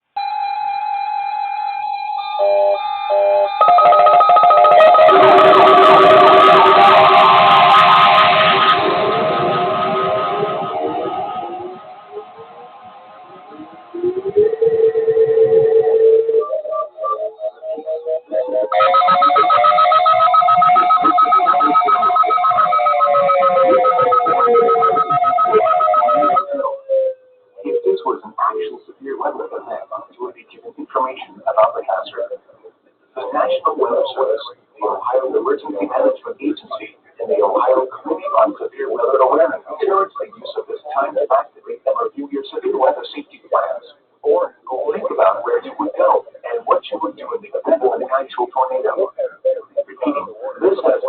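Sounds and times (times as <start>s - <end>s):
pulsing two-note siren: 0.2s - 27.2s
rising and falling siren: 0.2s - 27.9s
held musical tone: 0.2s - 28.1s
guitar-led music: 4.7s - 14.2s.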